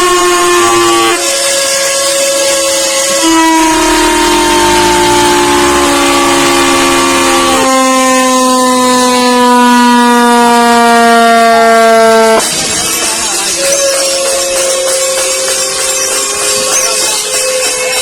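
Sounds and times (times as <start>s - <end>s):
ship's horn blast: 0.0s - 12.6s
faint horn tone: 2.6s - 12.4s
noisy clatter: 12.4s - 18.0s.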